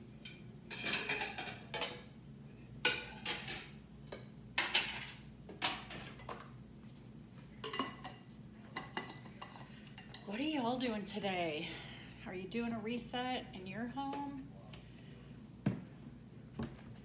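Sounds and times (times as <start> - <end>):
dishes and cutlery clinking: 0.2 - 2.1, 7.6 - 10.3.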